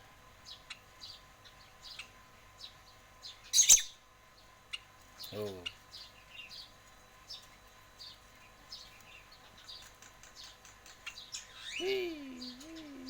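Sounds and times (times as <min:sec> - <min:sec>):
lovebird chirping: 0:00.4 - 0:04.0.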